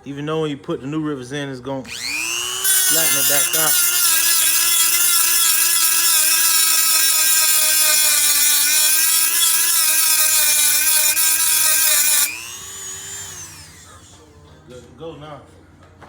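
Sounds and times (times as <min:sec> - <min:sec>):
power cutting tool whining: 0:01.9 - 0:14.2.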